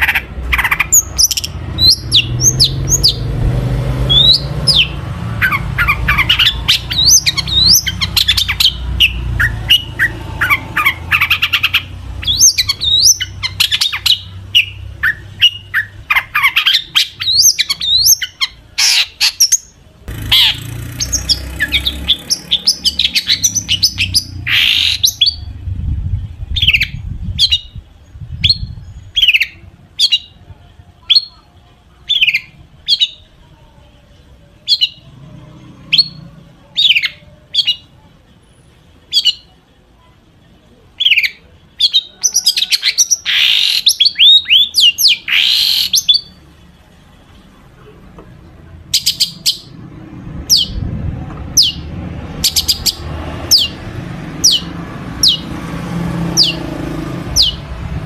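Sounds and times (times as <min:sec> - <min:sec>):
bird singing varied song: 0:00.0 - 0:47.6, 0:48.2 - 0:50.9, 0:51.5 - 0:58.0.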